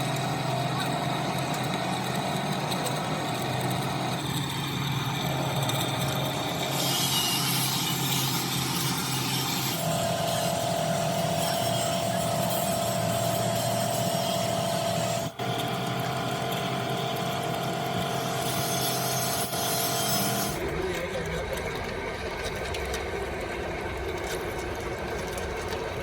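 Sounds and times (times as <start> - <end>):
workshop machinery humming: 0.0 - 26.0.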